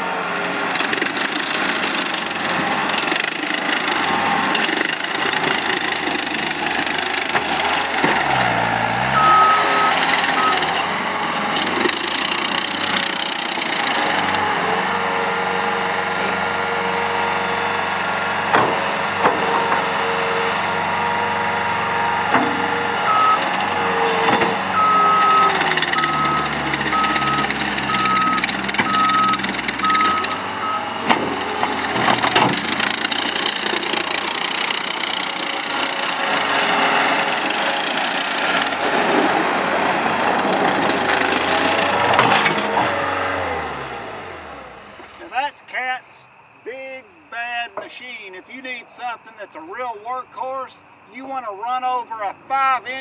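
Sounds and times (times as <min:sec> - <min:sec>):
loader engine running: 0:00.0 - 0:45.4
machine clanking: 0:00.1 - 0:14.8, 0:18.5 - 0:20.0, 0:22.2 - 0:43.0
backup alarm beeping: 0:09.0 - 0:10.8, 0:23.0 - 0:31.0.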